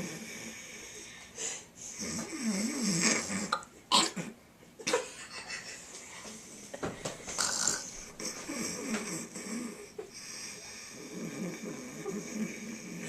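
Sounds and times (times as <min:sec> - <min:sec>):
boy imitating snoring: 0:02.0 - 0:03.6, 0:07.4 - 0:09.9, 0:10.9 - 0:13.0.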